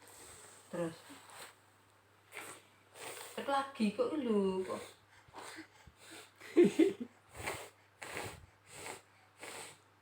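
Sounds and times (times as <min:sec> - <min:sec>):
child blowing air through nose: 0:02.3 - 0:03.4, 0:05.3 - 0:06.4, 0:07.3 - 0:09.9.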